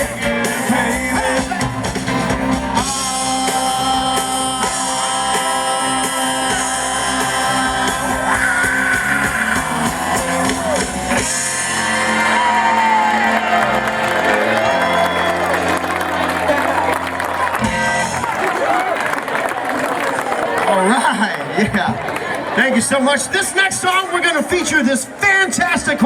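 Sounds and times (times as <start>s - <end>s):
lead vocals and shouts: 0.0s - 17.4s
live soul and rock band: 0.0s - 18.8s.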